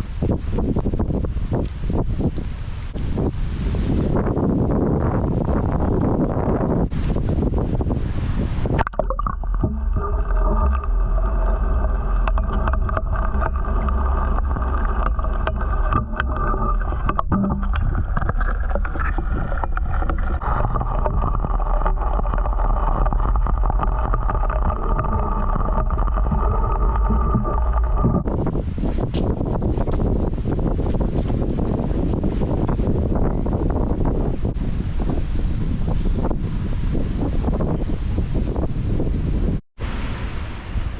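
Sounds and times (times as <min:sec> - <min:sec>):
deep rumble: 0:06.8 - 0:30.7
motor hum: 0:08.8 - 0:28.4.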